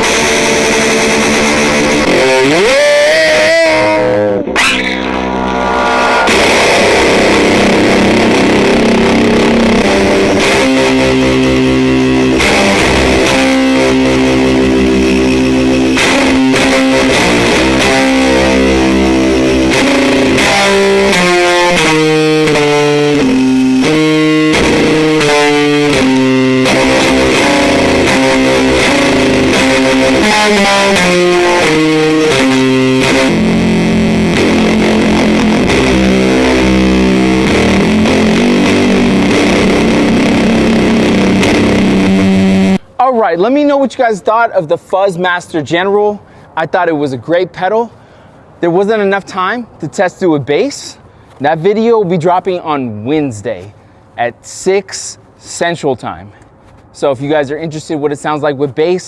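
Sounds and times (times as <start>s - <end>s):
electric guitar single-note run: 0.0s - 42.9s
heavily fuzzed electric guitar chords: 0.0s - 43.7s.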